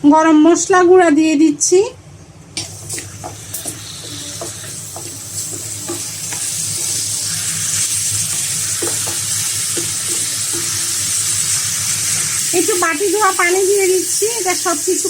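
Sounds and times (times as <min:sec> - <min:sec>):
food sizzling in a pan: 0:02.6 - 0:15.0
spatula scraping and tapping pan: 0:02.9 - 0:12.2.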